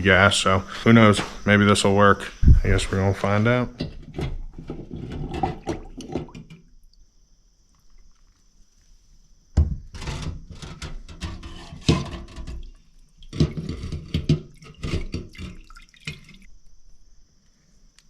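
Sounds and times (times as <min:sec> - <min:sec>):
parts knocking: 0:03.0 - 0:06.6, 0:09.6 - 0:12.7, 0:13.3 - 0:16.2
liquid splashing and dripping: 0:14.5 - 0:16.5.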